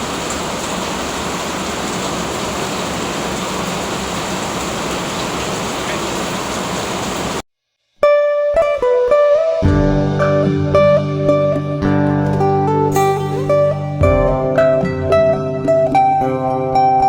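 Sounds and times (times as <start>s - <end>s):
heavy rain pouring: 0.0s - 7.4s.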